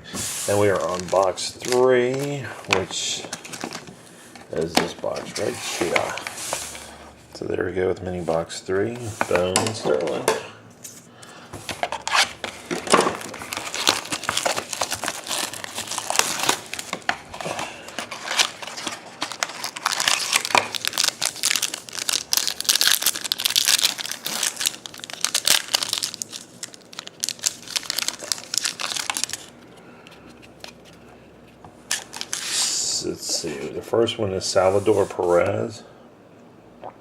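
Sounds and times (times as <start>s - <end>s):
plastic and foil packaging tearing: 0.5s - 2.4s, 12.0s - 29.5s, 31.9s - 33.0s.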